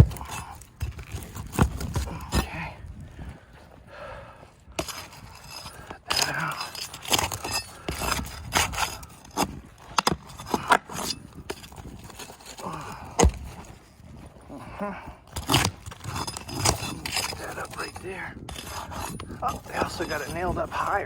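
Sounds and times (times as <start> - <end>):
tool prying at roof shingles: 0.0 - 2.5, 4.8 - 13.7, 15.3 - 20.7.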